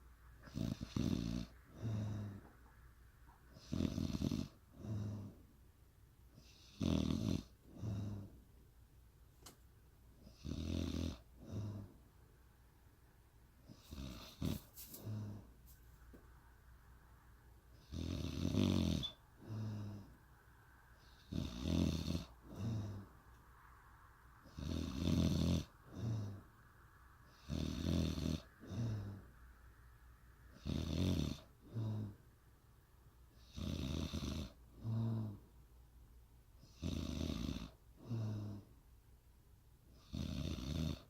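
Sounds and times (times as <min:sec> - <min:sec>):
woman snoring: 0:00.4 - 0:02.5, 0:03.6 - 0:05.3, 0:06.5 - 0:08.3, 0:10.4 - 0:11.9, 0:17.8 - 0:20.2, 0:21.1 - 0:23.1, 0:24.5 - 0:26.5, 0:27.3 - 0:29.2, 0:30.6 - 0:32.2, 0:33.4 - 0:35.4, 0:36.7 - 0:38.6, 0:40.0 - 0:41.0.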